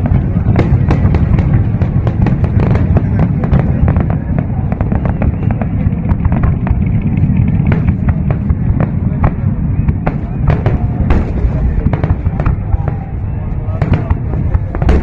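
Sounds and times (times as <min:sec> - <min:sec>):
fireworks sharp pops: 0:00.0 - 0:13.1, 0:13.8 - 0:15.0
fireworks rumble: 0:00.0 - 0:15.0.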